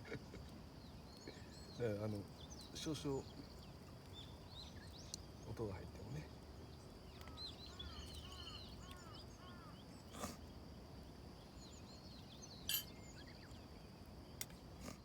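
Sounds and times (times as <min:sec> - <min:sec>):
small birds chirping: 0:00.4 - 0:15.0
faint steady high tone: 0:12.7 - 0:13.0.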